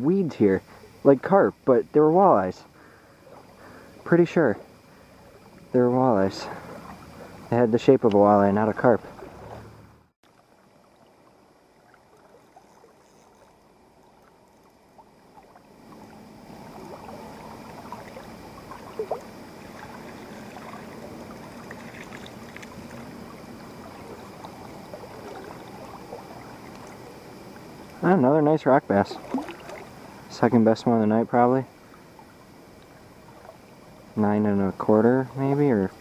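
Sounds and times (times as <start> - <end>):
river water sloshing and trickling: 0.1 - 36.0
small water splashes: 2.8 - 28.1, 28.9 - 30.4, 31.7 - 34.2
sharp splash: 29.1 - 30.0.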